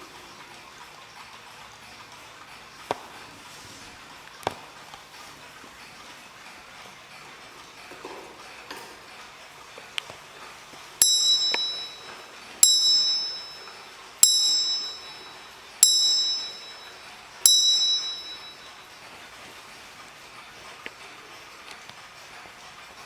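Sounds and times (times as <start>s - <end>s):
mantel clock striking bell: 11.0s - 19.6s.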